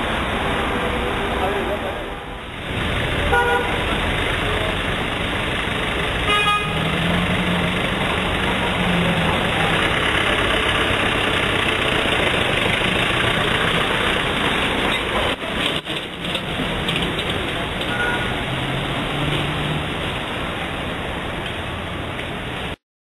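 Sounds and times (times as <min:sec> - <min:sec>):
road traffic passing: 0:00.0 - 0:22.8
car horn toot: 0:03.3 - 0:03.8, 0:06.3 - 0:06.8, 0:17.9 - 0:18.3.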